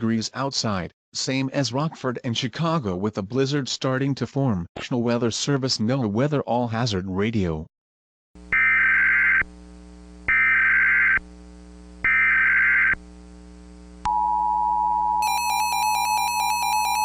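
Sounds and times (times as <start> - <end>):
steady alarm tone: 8.5 - 9.5, 10.3 - 11.2, 12.1 - 13.0, 14.1 - 17.0
warbling data squawk bursts: 10.3 - 11.2.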